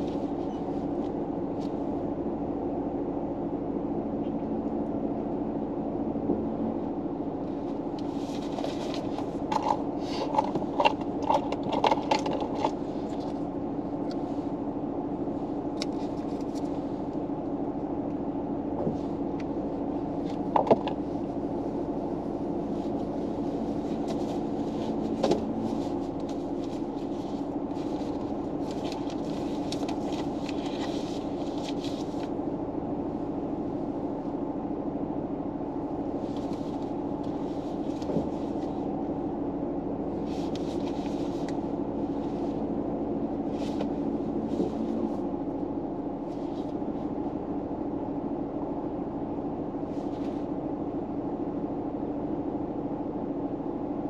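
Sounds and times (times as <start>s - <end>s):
car engine hum: 0.0s - 54.0s
soft rustles: 7.4s - 14.6s, 15.3s - 17.2s, 18.8s - 34.4s, 36.0s - 39.0s, 40.1s - 47.4s, 49.8s - 50.5s.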